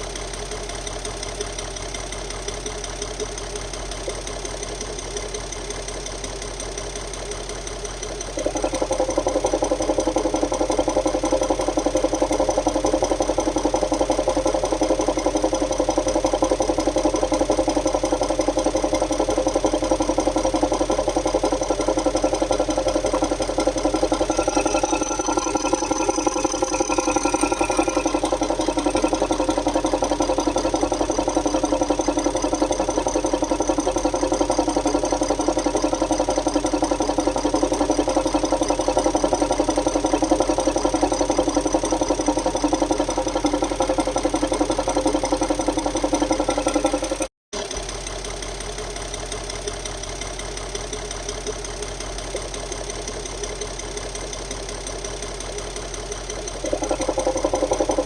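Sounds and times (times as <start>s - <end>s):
diesel engine idling: 0.0s - 58.0s
rhythmic metallic engine knock: 0.0s - 58.0s.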